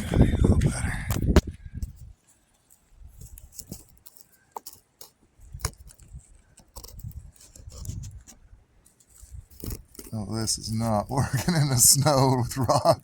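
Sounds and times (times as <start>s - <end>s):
camera handling noise: 1.1s - 10.2s.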